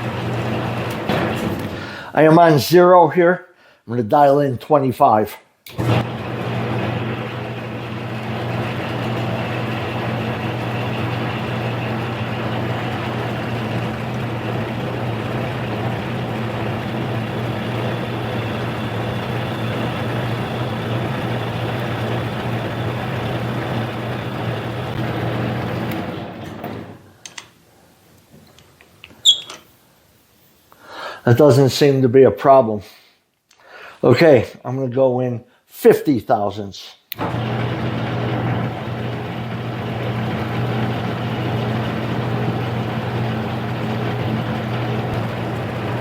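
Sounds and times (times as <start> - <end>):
lathe motor humming: 0.0 - 1.4, 5.7 - 27.0, 37.2 - 46.0
machine winding down: 0.0 - 1.9, 5.7 - 27.0, 37.2 - 46.0.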